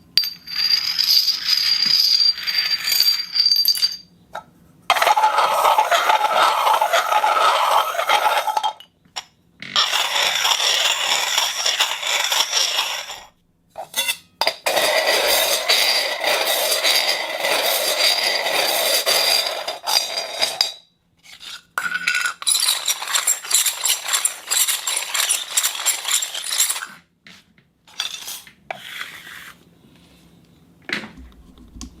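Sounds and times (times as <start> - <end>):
object scraping concrete floor: 4.9 - 8.8, 9.8 - 30.3.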